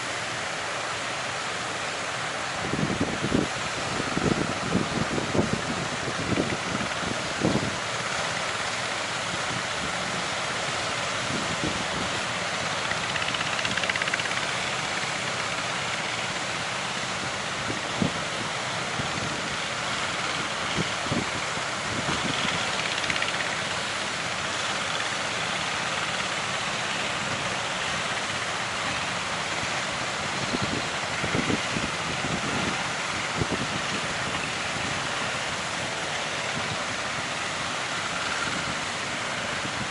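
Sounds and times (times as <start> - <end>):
strong wind on microphone: 2.6 - 7.8, 30.4 - 35.0.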